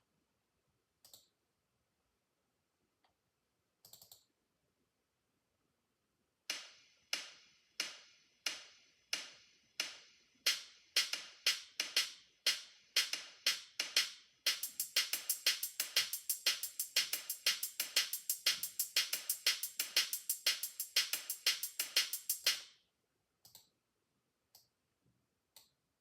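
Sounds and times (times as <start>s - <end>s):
sharp percussive clicks: 6.5s - 22.7s.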